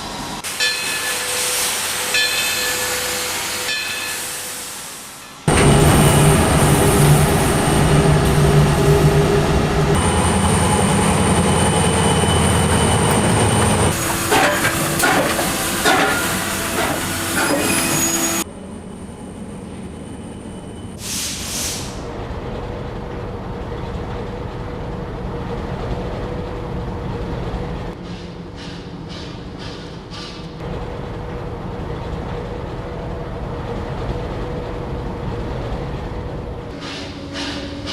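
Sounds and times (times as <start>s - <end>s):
locomotive running: 5.4s - 21.0s
steam hiss: 21.0s - 22.0s.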